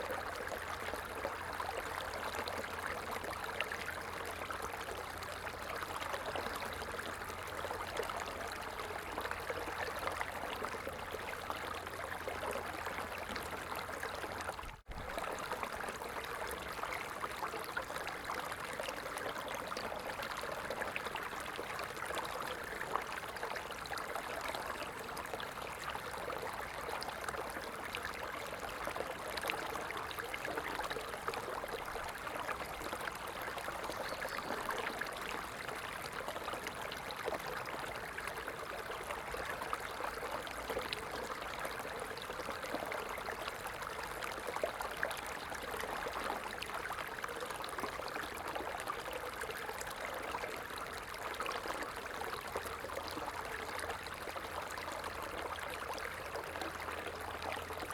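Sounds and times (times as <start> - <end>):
stream water running: 0.0 - 57.9.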